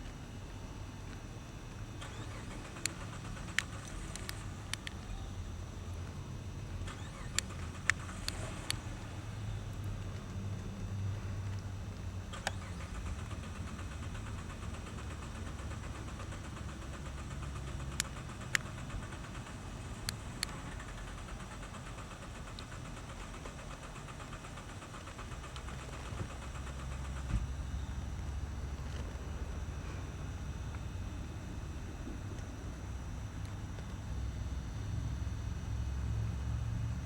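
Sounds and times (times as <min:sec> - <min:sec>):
car engine idling: 0:00.0 - 0:37.0
sharp clicks: 0:02.0 - 0:10.6, 0:11.4 - 0:27.5.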